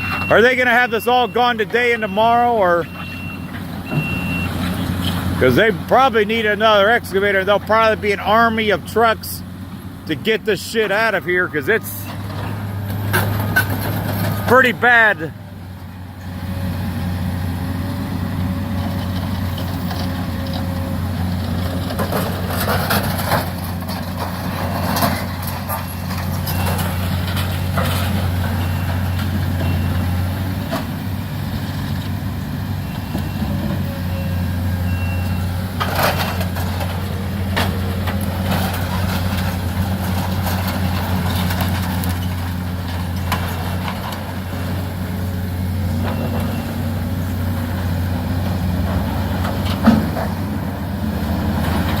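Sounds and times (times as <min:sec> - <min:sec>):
diesel excavator engine running: 0:00.0 - 0:52.0
debris clanking and crashing: 0:18.8 - 0:30.9, 0:35.4 - 0:44.9.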